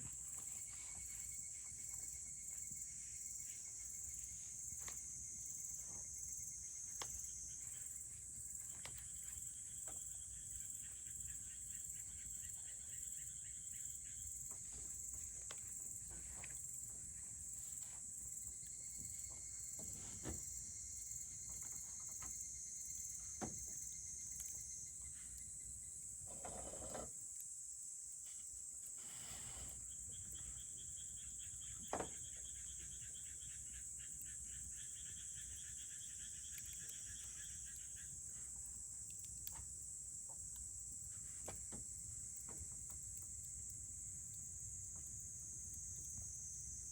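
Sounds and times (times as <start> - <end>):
insect trill: 0.0 - 46.9
campfire crackling: 36.5 - 44.5.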